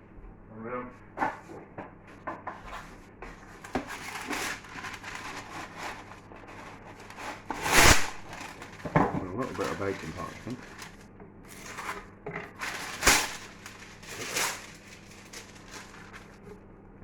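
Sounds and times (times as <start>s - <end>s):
scraping and rubbing: 2.6s - 16.4s
loud rasping rustle: 3.6s - 8.8s, 12.6s - 16.3s.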